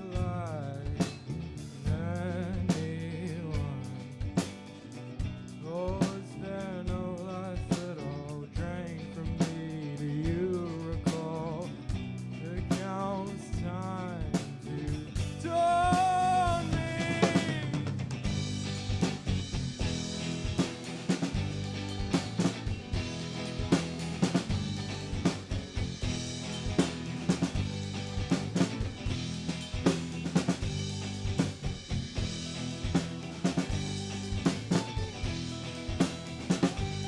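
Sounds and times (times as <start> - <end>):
drum kit: 0.0 - 37.0
rock band playing live: 0.0 - 37.0
person singing: 14.9 - 17.8.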